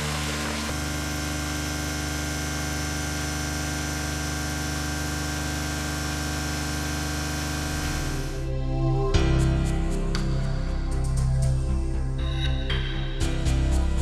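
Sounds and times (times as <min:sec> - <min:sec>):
milling machine cutting metal: 0:00.0 - 0:08.4.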